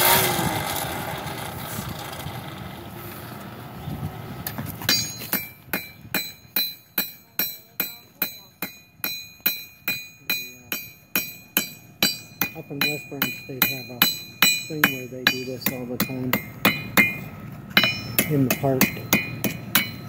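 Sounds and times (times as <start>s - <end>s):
hammer ringing on anvil: 4.9s - 20.0s.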